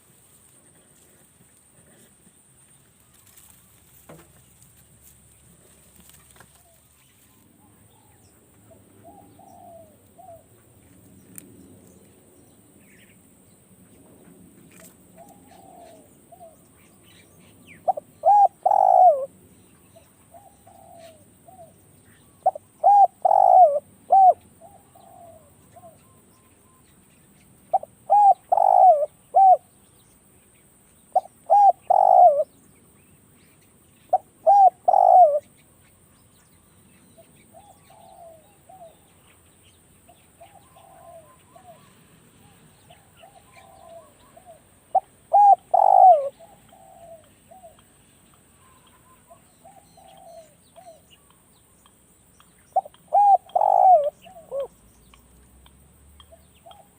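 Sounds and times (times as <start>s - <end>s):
faint dove cooing: 0.6s - 2.4s, 7.6s - 10.6s, 14.7s - 19.3s, 19.9s - 26.8s, 27.7s - 29.7s, 31.1s - 32.6s, 34.1s - 35.6s, 37.5s - 39.2s, 40.1s - 48.0s, 48.6s - 51.2s, 52.8s - 54.8s
dove cooing loudly: 9.0s - 10.5s, 15.2s - 16.6s, 17.8s - 19.3s, 20.3s - 21.7s, 22.4s - 26.0s, 27.7s - 29.6s, 31.2s - 32.5s, 34.1s - 35.4s, 37.6s - 39.0s, 40.4s - 41.9s, 43.2s - 47.8s, 49.2s - 51.0s, 52.8s - 54.7s.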